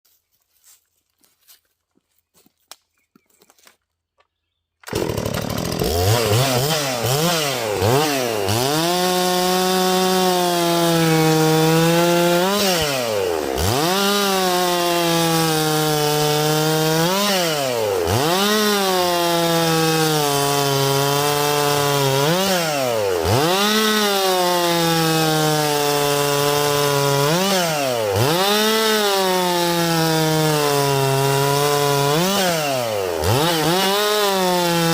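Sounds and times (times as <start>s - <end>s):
chainsaw running at high revs: 4.8s - 34.9s.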